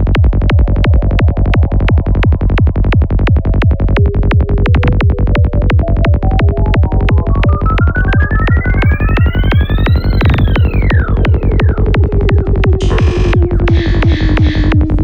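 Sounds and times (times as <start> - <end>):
climbing synth line: 0.0 - 15.0
electronic dance music: 4.0 - 15.0.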